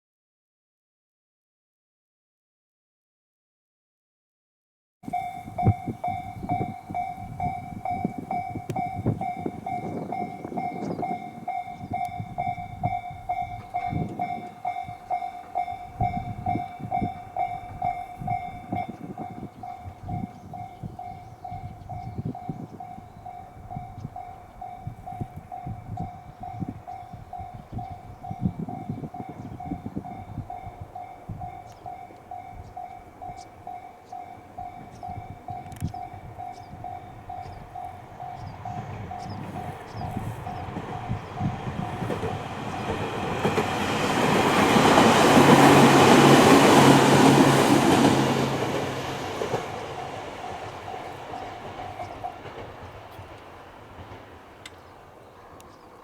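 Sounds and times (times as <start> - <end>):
level crossing alarm ringing: 5.1 - 49.2
train wheels clattering over rails: 34.1 - 55.1.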